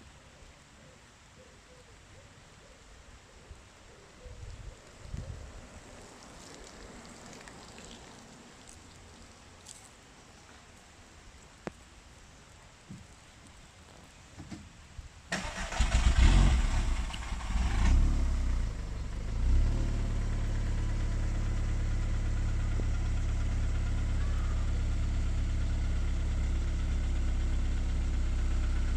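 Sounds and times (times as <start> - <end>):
engine starting and idling: 15.3 - 19.2.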